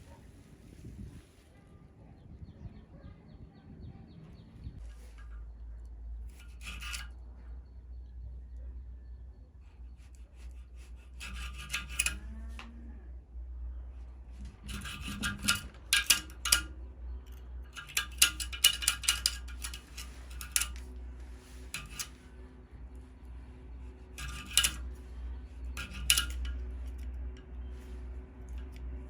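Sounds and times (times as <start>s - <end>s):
steady low hum: 0.0s - 29.0s
file scraping metal: 6.3s - 7.4s, 9.6s - 12.8s, 14.0s - 29.0s.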